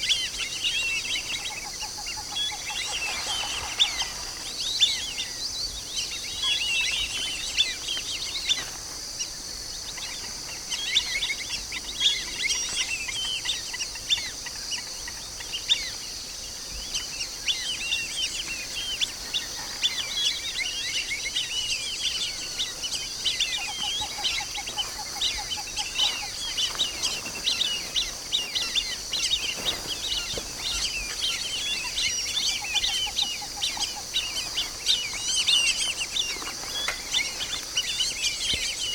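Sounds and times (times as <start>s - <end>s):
ducks whistling calls: 0.0s - 5.4s, 17.0s - 38.9s.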